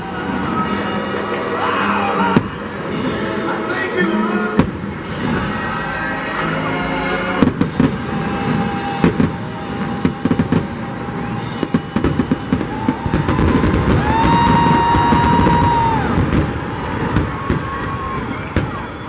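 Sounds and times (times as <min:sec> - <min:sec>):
fireworks bangs and crackles: 0:02.2 - 0:03.3, 0:04.5 - 0:05.7, 0:07.3 - 0:19.0.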